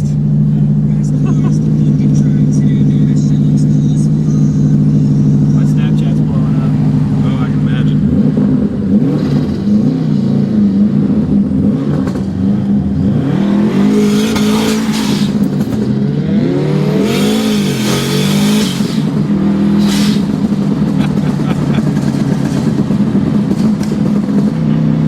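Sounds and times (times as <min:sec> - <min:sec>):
car engine revving: 0:00.0 - 0:25.0.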